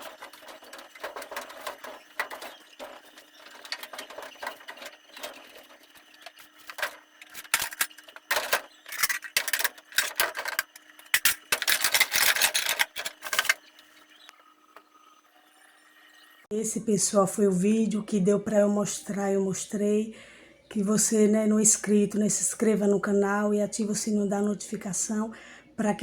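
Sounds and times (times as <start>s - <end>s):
objects clicking and knocking: 0.0s - 13.9s
steady rubbing: 0.0s - 14.0s
faint steady hum: 0.0s - 26.0s.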